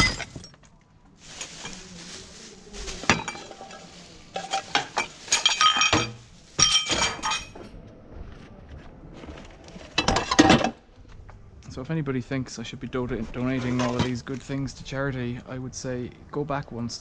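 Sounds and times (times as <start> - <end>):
saucepans clattering: 0.0 - 0.6, 1.2 - 7.7.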